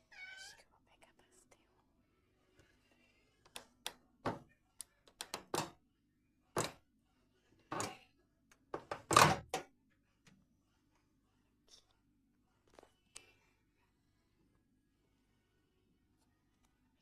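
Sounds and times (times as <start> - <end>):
objects knocking and thunking: 4.2 - 4.5, 8.7 - 9.7.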